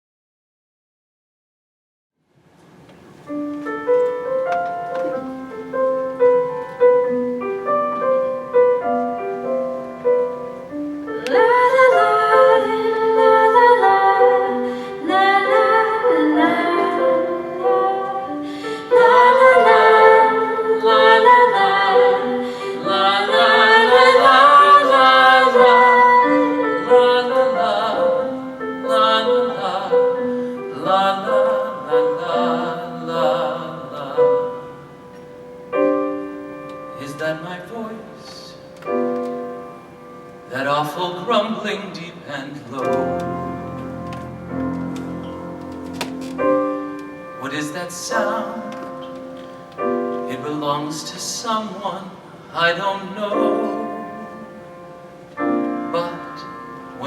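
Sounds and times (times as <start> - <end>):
piano playing: 3.0 - 57.0
woman singing: 11.1 - 34.5.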